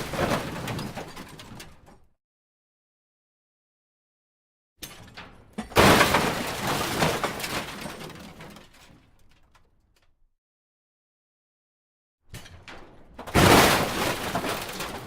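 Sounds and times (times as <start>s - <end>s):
crash of crumpling metal: 0.0s - 2.1s, 4.8s - 9.5s, 12.3s - 15.0s
debris rattling: 0.0s - 2.1s, 4.8s - 10.1s, 12.3s - 15.0s
glass breaking: 13.3s - 15.0s.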